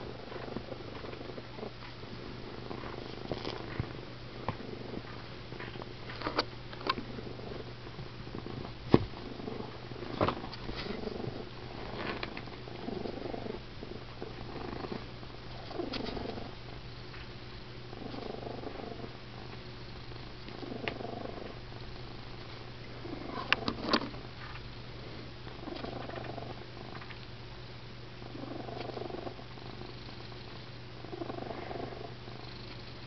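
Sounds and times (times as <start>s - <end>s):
cat snoring loudly: 0.0s - 5.2s, 7.0s - 7.7s, 8.3s - 16.6s, 17.9s - 19.1s, 19.9s - 24.2s, 25.6s - 27.0s, 28.2s - 30.4s, 31.0s - 33.0s.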